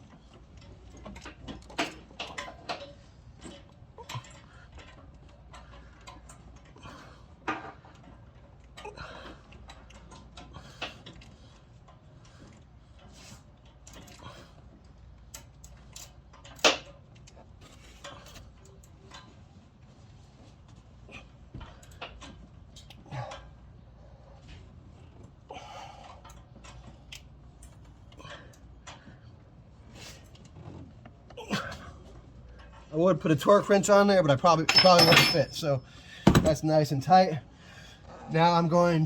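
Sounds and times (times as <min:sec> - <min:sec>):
sharp metallic clack: 0:34.7 - 0:36.5.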